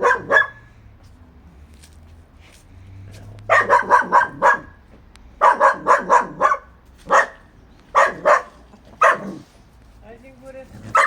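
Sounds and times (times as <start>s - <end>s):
dog barking: 0.0s - 0.7s, 3.4s - 4.8s, 5.4s - 9.5s.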